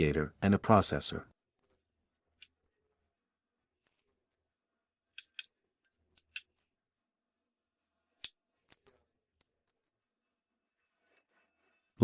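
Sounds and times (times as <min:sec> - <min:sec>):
small tools clicking on laptop: 0:05.1 - 0:06.7, 0:08.2 - 0:09.7.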